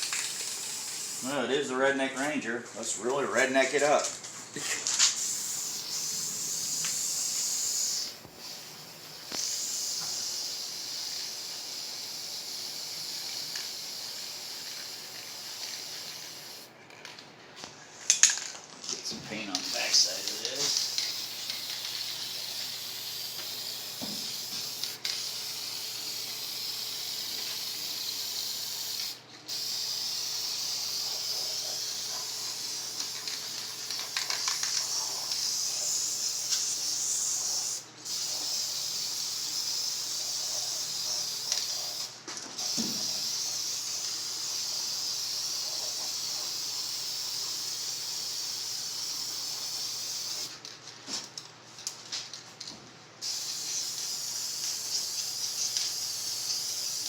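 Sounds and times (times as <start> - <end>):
spray paint hissing: 0.0 - 1.4, 4.6 - 16.7, 19.4 - 50.6, 53.2 - 57.0.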